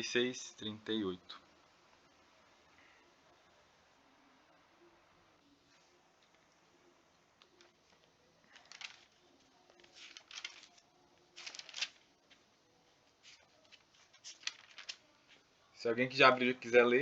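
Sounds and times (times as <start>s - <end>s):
paper pages rustling: 7.4s - 15.4s.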